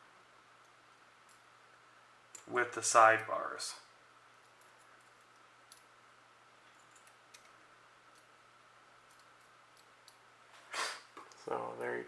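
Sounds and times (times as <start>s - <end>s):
faint clicks of metal lock parts: 4.4s - 5.9s, 6.7s - 8.4s.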